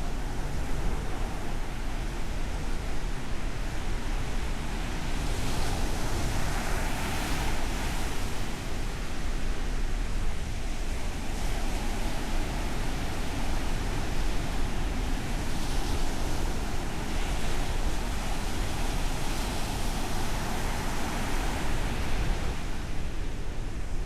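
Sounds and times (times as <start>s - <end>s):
wind rumble on microphone: 0.0s - 24.0s
surf washing onto beach: 10.9s - 23.9s.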